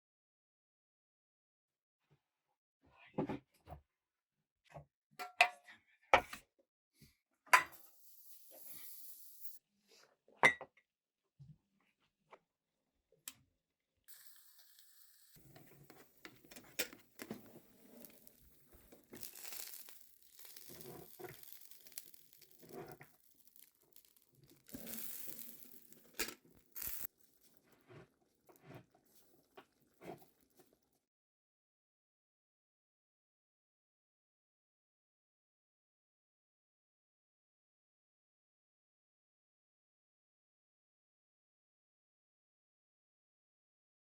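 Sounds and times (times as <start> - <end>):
crinkly wrapping rustling: 15.4 - 30.6.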